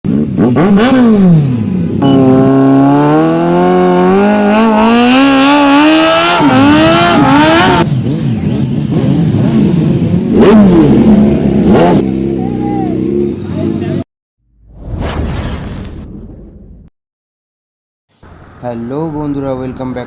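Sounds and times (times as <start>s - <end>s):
motorcycle engine revving: 0.1s - 14.0s.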